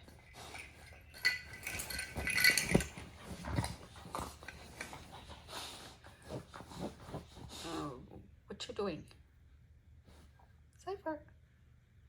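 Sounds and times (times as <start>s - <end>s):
jingling cat toy rattling: 0.0s - 5.3s.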